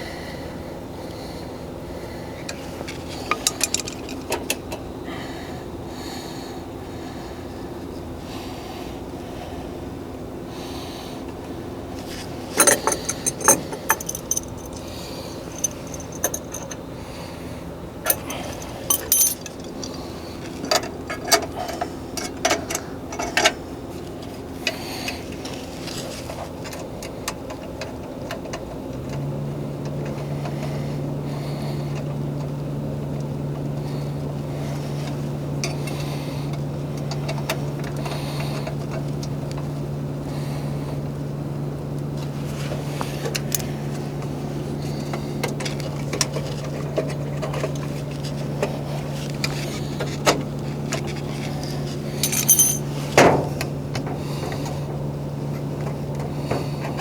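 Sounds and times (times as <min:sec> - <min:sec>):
steady machinery hum: 0:00.0 - 0:57.0
metal tools clicking and clinking: 0:03.2 - 0:04.5, 0:12.5 - 0:16.8, 0:18.1 - 0:20.0, 0:52.2 - 0:52.9.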